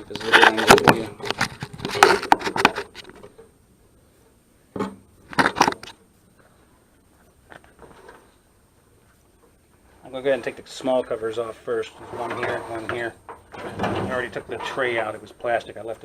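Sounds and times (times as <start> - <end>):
handling knocks and scrapes: 0.0 - 3.5, 11.8 - 15.1.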